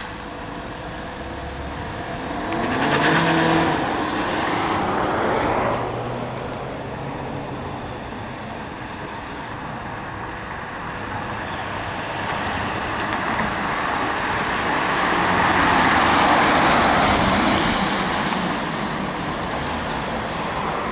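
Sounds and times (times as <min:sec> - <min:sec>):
vehicle passing close by: 0:01.1 - 0:08.2.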